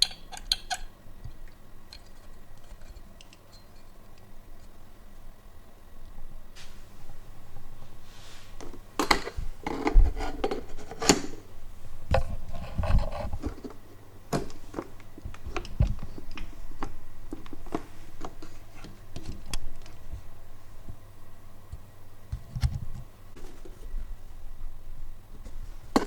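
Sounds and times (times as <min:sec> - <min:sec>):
metal parts and tools clicking: 0:00.0 - 0:00.9.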